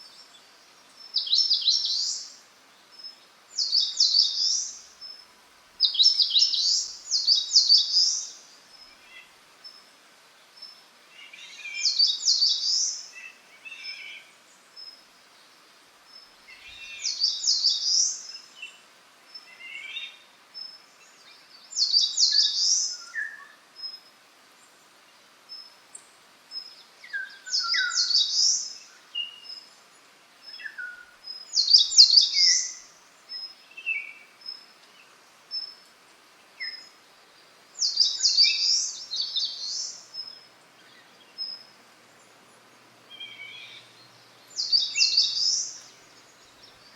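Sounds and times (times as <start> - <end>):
songbird singing fast repeated notes: 0.0 - 9.9, 10.6 - 15.2, 16.1 - 24.0, 24.9 - 46.9
soft bird calls: 25.6 - 46.9.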